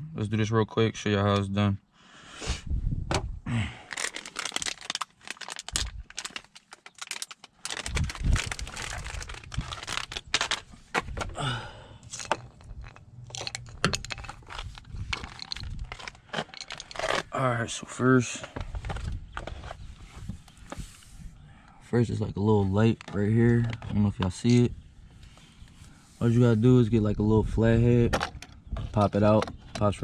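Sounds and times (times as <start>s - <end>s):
handling clicks and crinkling rustles: 3.8s - 21.1s, 22.1s - 25.5s.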